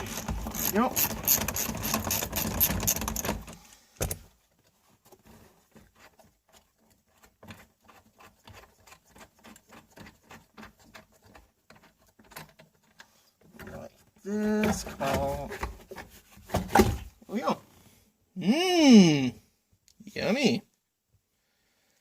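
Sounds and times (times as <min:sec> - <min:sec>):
ratchet wrench clicking: 0:00.0 - 0:03.3.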